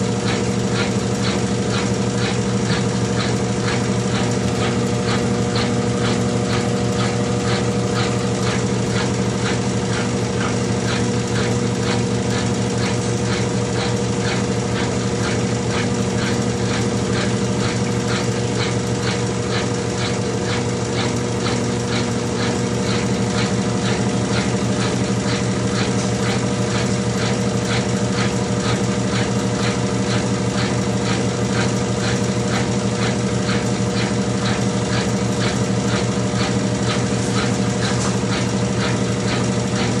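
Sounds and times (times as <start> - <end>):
washing machine motor hum: 0.0 - 40.0
fast regular ticking: 0.1 - 40.0.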